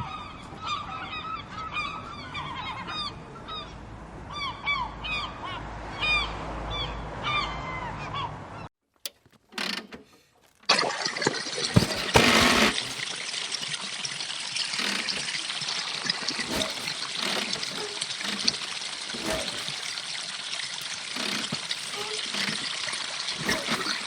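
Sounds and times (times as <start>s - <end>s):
water trickling and pouring: 10.5s - 24.0s.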